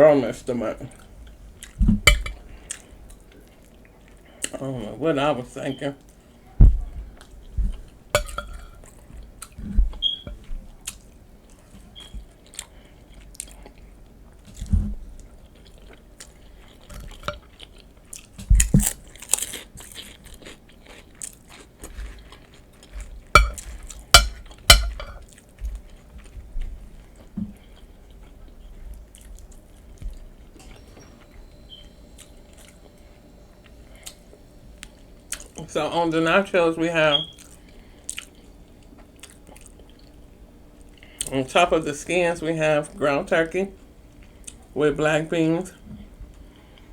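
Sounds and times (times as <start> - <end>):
chewing and crunching nachos: 0.6 - 5.3, 6.0 - 36.6, 37.2 - 42.0, 42.9 - 44.8, 45.7 - 46.9.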